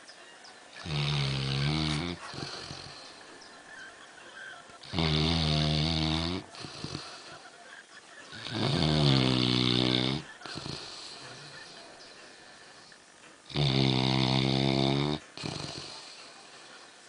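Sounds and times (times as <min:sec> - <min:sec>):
dog snoring: 0:00.7 - 0:03.2, 0:04.8 - 0:07.3, 0:08.4 - 0:11.8, 0:13.5 - 0:16.6
dog breathing: 0:00.9 - 0:03.5.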